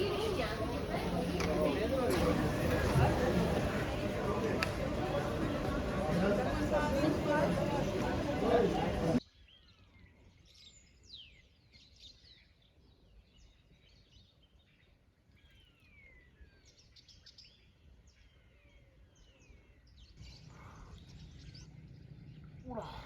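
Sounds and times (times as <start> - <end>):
small birds chirping: 9.4 - 23.0.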